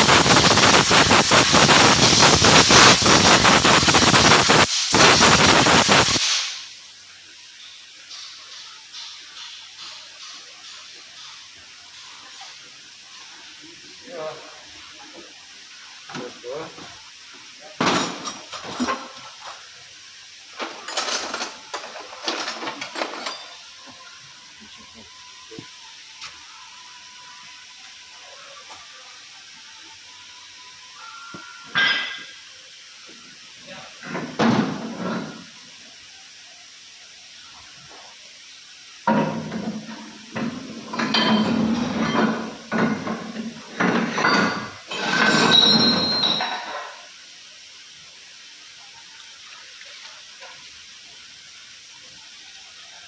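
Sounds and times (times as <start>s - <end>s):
metal-on-metal workshop clanking: 8.0s - 12.6s, 17.8s - 19.6s, 20.6s - 23.7s, 31.7s - 32.4s, 34.0s - 35.5s, 39.0s - 47.1s
metal parts clinking and clattering: 20.6s - 23.6s, 43.9s - 47.0s
high metallic ring: 31.7s - 32.4s, 44.1s - 47.0s.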